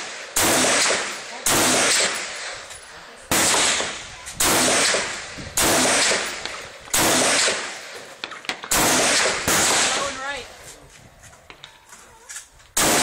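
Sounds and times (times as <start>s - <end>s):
gunshots: 0.0s - 2.7s, 3.3s - 10.4s, 12.8s - 13.0s.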